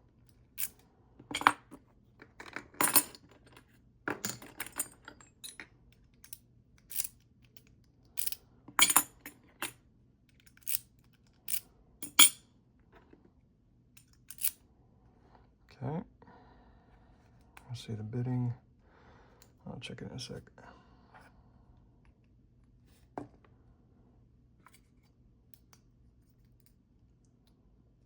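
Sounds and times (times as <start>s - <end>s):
metal keys clinking against lock: 2.4s - 3.2s, 4.1s - 7.2s, 8.2s - 9.8s, 11.5s - 12.4s, 14.0s - 14.6s.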